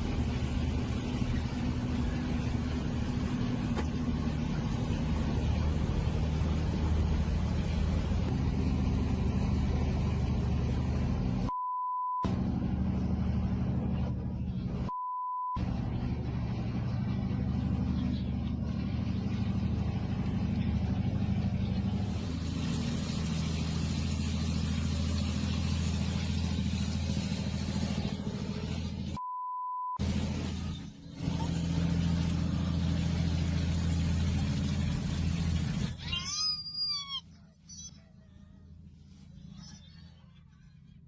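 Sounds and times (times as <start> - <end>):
car engine running: 0.0 - 11.5, 12.2 - 15.0, 15.6 - 29.2, 30.0 - 41.0
censor bleep: 11.5 - 12.3, 14.9 - 15.6, 29.2 - 30.0.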